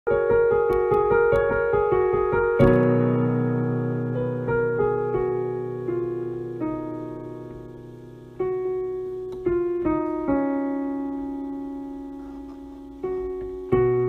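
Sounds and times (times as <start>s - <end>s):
slow quiet piano music: 0.1s - 14.0s.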